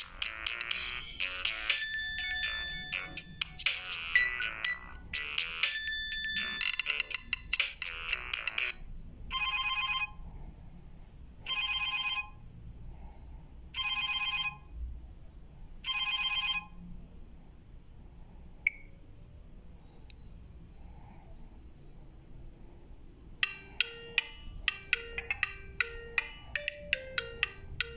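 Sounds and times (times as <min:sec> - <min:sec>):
electronic phone ringtone: 0:00.0 - 0:10.2, 0:11.4 - 0:12.4, 0:13.8 - 0:14.8, 0:15.8 - 0:16.8, 0:23.4 - 0:27.9
melodic ringtone: 0:00.0 - 0:10.2, 0:11.4 - 0:12.4, 0:13.7 - 0:14.7, 0:15.8 - 0:16.8, 0:23.4 - 0:27.9.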